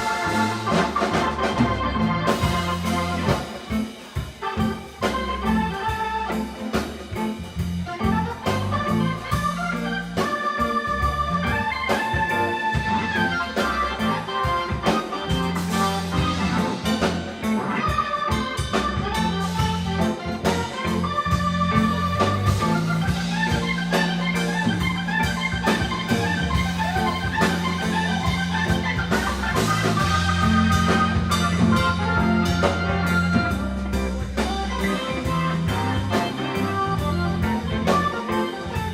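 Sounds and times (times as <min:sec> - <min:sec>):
bass line: 0:00.0 - 0:38.9
drums: 0:00.0 - 0:38.9
keyboard solo: 0:00.0 - 0:38.9.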